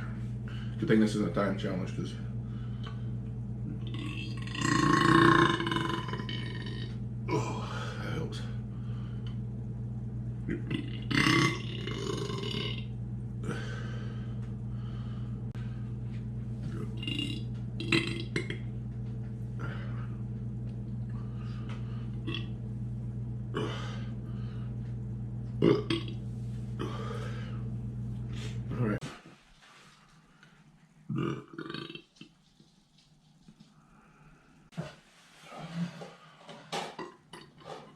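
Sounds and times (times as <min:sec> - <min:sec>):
low electrical hum: 0:00.0 - 0:37.9
man burping: 0:03.7 - 0:07.9, 0:10.5 - 0:12.8, 0:16.7 - 0:18.6, 0:22.2 - 0:22.5, 0:23.5 - 0:24.1, 0:25.6 - 0:26.1.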